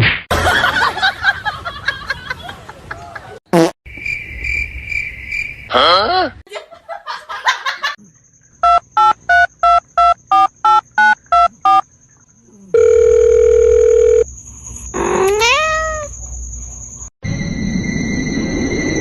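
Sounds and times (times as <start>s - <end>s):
steady phone tone: 12.7s - 14.3s
cat meowing: 15.0s - 16.1s.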